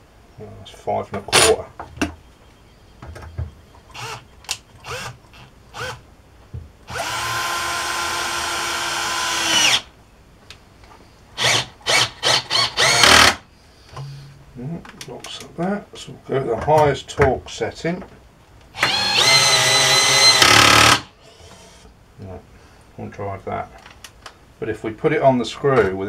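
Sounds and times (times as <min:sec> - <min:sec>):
cordless drill driving screw: 0:03.9 - 0:04.2, 0:04.8 - 0:06.0, 0:06.9 - 0:09.9, 0:11.4 - 0:13.4, 0:18.8 - 0:21.9
short sharp drill bursts: 0:06.9 - 0:09.9, 0:11.4 - 0:13.4, 0:18.8 - 0:21.9.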